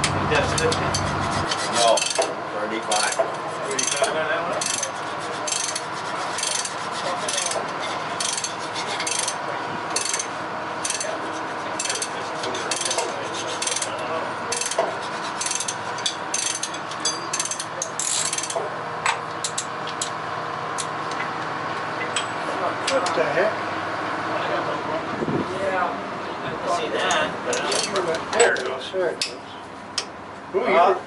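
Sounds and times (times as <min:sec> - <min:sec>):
ratchet wrench clicking: 0:03.8 - 0:04.9, 0:05.5 - 0:05.8, 0:08.2 - 0:09.4, 0:10.0 - 0:11.1, 0:14.5 - 0:14.8, 0:15.4 - 0:18.6.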